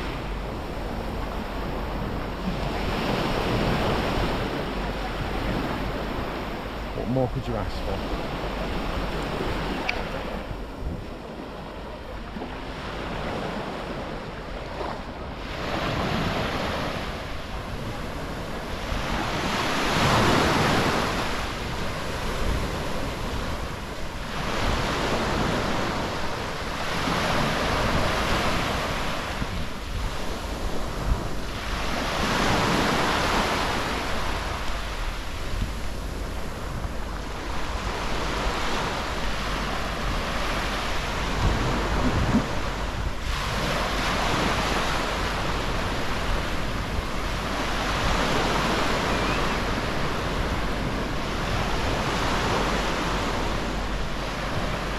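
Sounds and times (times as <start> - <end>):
sea waves breaking on beach: 0.0 - 54.9
wind rumbling on microphone: 0.0 - 54.9.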